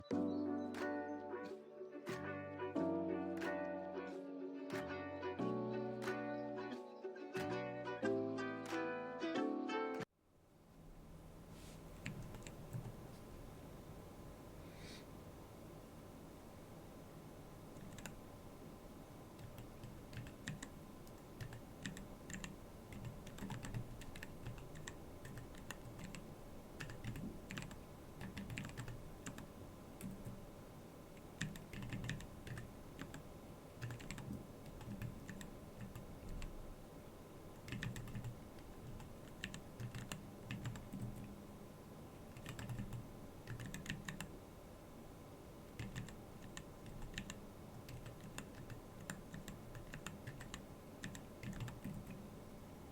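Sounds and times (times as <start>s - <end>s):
faint steady hum: 0.0s - 52.9s
mechanical keyboard typing: 12.0s - 13.0s, 17.8s - 18.2s, 19.4s - 30.4s, 31.2s - 33.2s, 33.8s - 36.6s, 37.6s - 41.4s, 42.3s - 44.3s, 45.7s - 52.2s.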